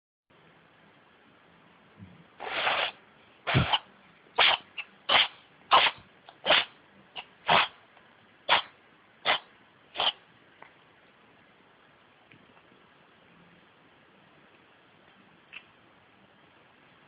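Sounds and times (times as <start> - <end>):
cat sneezing: 2.4 - 7.8, 8.5 - 10.2.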